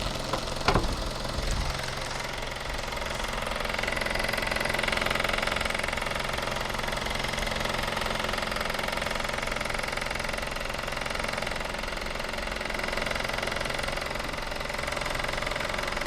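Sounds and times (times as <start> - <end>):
rattling from wheel arch: 0.0 - 4.0
car engine idling: 0.0 - 9.4.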